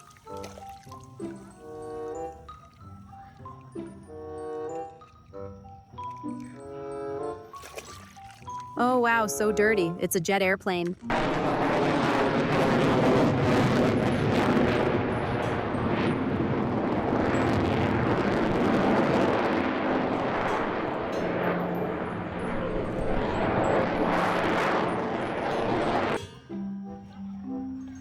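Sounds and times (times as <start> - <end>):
jet airplane engine rushing: 11.1 - 26.3.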